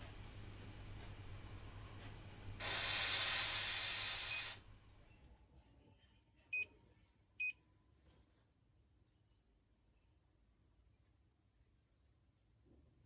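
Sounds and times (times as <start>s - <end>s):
soldering iron hissing in sponge: 2.6s - 4.7s.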